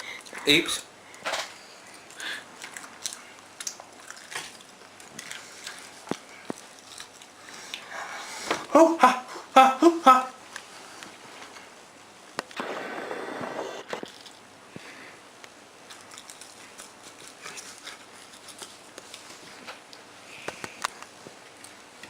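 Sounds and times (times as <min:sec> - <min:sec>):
person chewing: 0:01.8 - 0:08.2, 0:15.8 - 0:21.8.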